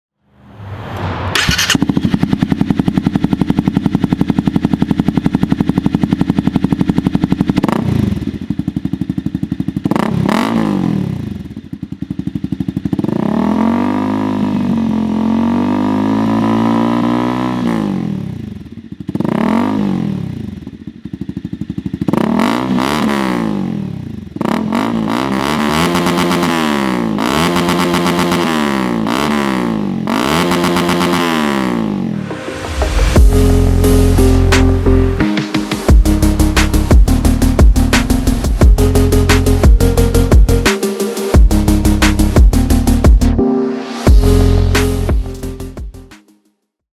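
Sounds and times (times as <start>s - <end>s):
motorcycle engine revving: 1.0s - 43.4s
exhaust crackles: 31.9s - 40.7s.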